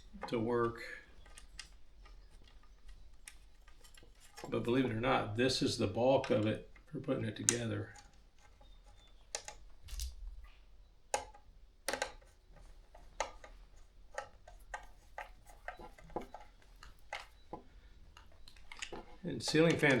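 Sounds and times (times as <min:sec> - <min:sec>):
hardware clicks and knocks: 0:06.2 - 0:20.0.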